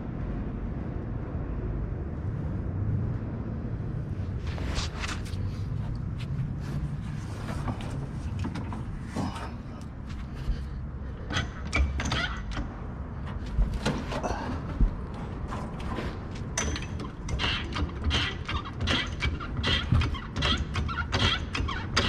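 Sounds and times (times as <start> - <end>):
steady low rumble: 0.0 - 11.7, 12.6 - 17.2
hand tools clicking and clanking: 13.3 - 22.0.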